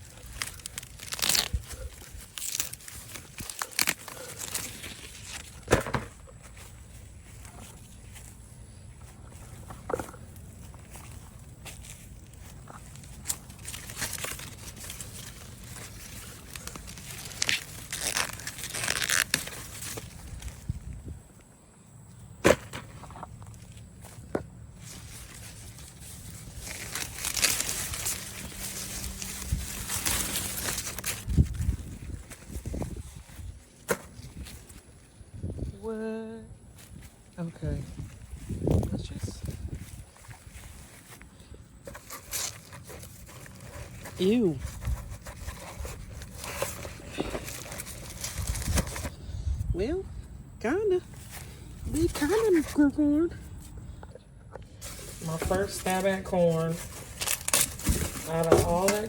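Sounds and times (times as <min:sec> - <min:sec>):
dry leaves rustling: 0:00.0 - 0:20.9, 0:23.4 - 0:49.2, 0:54.8 - 0:59.0.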